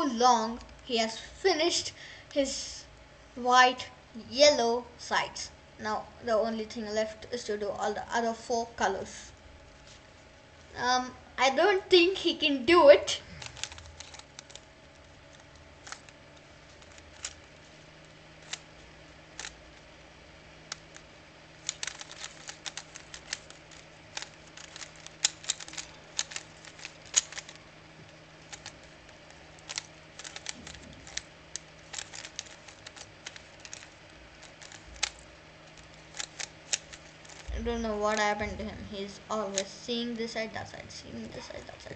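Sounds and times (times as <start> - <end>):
puzzle cube layers clicking: 13.4 - 14.6, 19.4 - 19.6, 21.6 - 27.6, 28.5 - 37.5.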